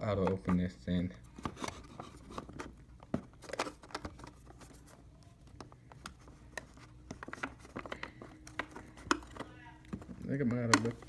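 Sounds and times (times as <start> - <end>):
hands tapping plastic pack: 5.5 - 11.0.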